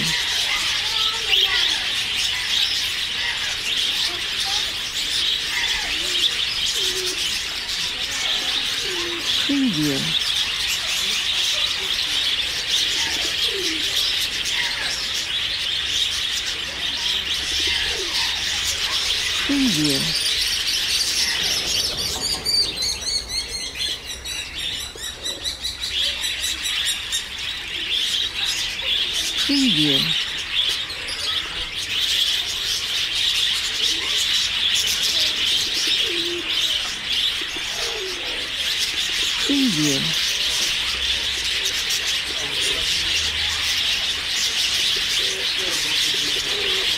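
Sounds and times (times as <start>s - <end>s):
dove cooing: 0.0s - 0.6s, 5.4s - 10.7s, 11.3s - 16.1s, 16.7s - 26.8s, 27.4s - 30.8s, 33.7s - 46.9s
small birds chirping: 0.0s - 46.9s.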